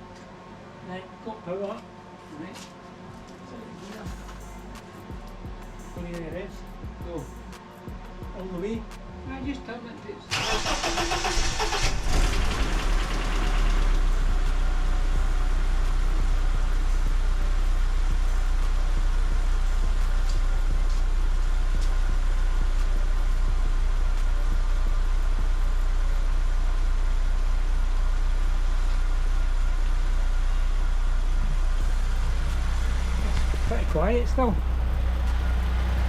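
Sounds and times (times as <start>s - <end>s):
car engine idling: 10.3s - 36.0s.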